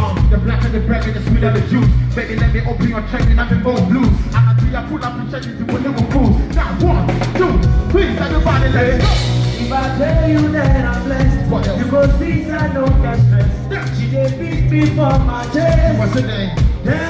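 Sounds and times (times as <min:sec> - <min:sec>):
live band playing: 0:00.0 - 0:17.0
person singing: 0:00.0 - 0:17.0.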